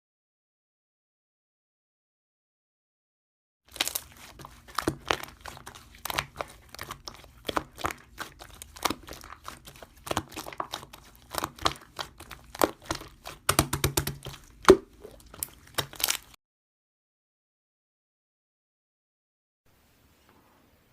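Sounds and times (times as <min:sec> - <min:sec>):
crinkling and crackling: 0:03.7 - 0:16.4.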